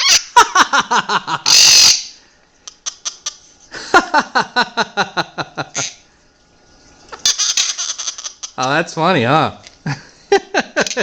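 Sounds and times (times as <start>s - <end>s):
parrot harsh screech: 0.0s - 0.3s, 1.5s - 2.2s, 7.2s - 8.6s
parrot laugh-like calls: 0.0s - 6.0s, 7.2s - 8.6s, 10.4s - 11.0s.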